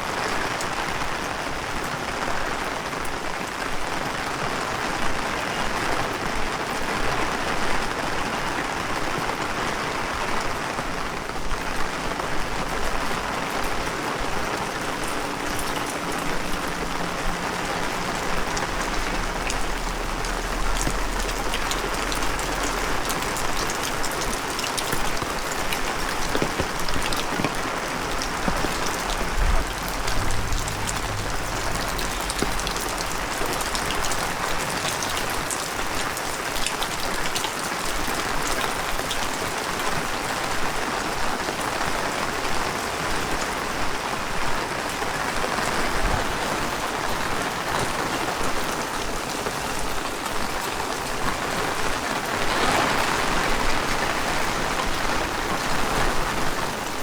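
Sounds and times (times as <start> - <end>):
heavy rain spattering on hard surfaces: 0.0 - 57.0
low rumbles: 11.5 - 36.4.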